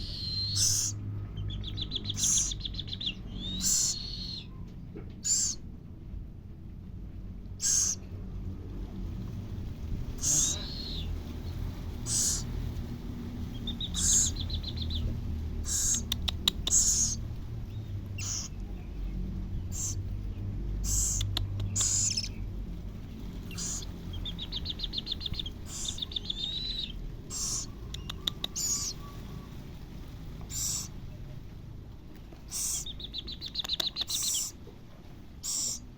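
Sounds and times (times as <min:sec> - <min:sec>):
owlet hissing screeches: 0:00.0 - 0:01.0, 0:03.5 - 0:04.4, 0:05.3 - 0:05.6, 0:07.6 - 0:08.0, 0:10.2 - 0:11.0, 0:12.0 - 0:12.5, 0:13.9 - 0:14.4, 0:15.6 - 0:16.1, 0:16.7 - 0:17.2, 0:18.2 - 0:18.5, 0:19.7 - 0:20.0, 0:20.8 - 0:21.2, 0:21.8 - 0:22.3, 0:23.6 - 0:23.9, 0:25.7 - 0:27.8, 0:28.5 - 0:29.1, 0:30.5 - 0:30.9, 0:32.5 - 0:32.8, 0:35.4 - 0:35.9
owlet chittering trills: 0:00.0 - 0:04.6, 0:05.2 - 0:05.7, 0:07.5 - 0:08.2, 0:09.6 - 0:31.5, 0:32.4 - 0:34.7, 0:35.4 - 0:35.9
sharp clicks: 0:15.9 - 0:16.9, 0:27.9 - 0:28.6, 0:33.5 - 0:34.3.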